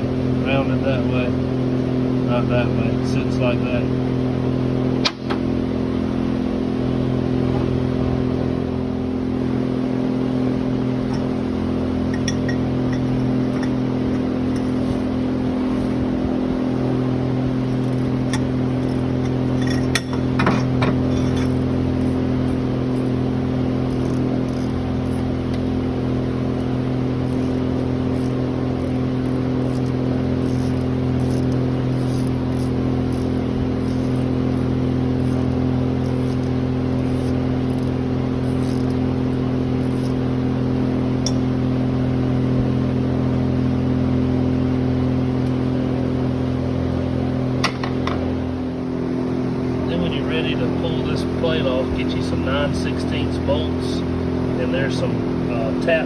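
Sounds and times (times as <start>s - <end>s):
engine idling: 47.5s - 56.0s.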